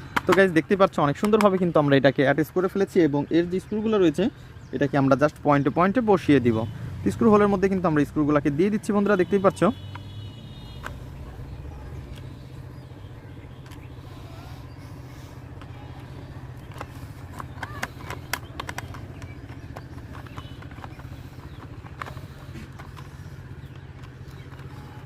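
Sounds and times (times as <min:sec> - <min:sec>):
clicks and taps of plastic parts: 0:00.0 - 0:01.9, 0:08.7 - 0:11.1, 0:15.5 - 0:25.0
steady low hum: 0:09.3 - 0:25.0.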